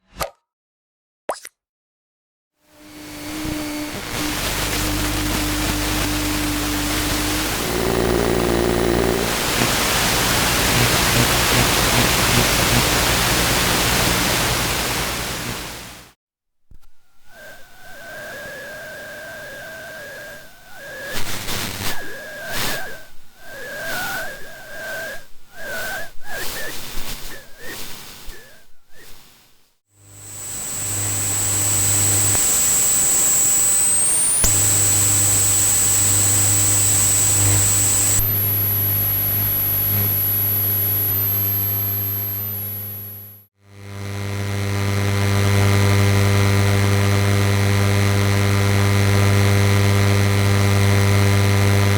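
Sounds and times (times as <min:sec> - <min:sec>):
loud electrical buzz: 0:02.7 - 0:16.1, 0:30.0 - 0:51.9
high-pitched rising whine: 0:02.8 - 0:14.4, 0:17.3 - 0:26.7, 0:30.0 - 0:43.4
low hum: 0:02.8 - 0:15.8, 0:30.1 - 0:38.9
stuttering wavering whine: 0:02.8 - 0:16.0, 0:17.2 - 0:28.6, 0:30.0 - 0:43.5
static hiss: 0:03.0 - 0:16.1, 0:30.0 - 0:43.4.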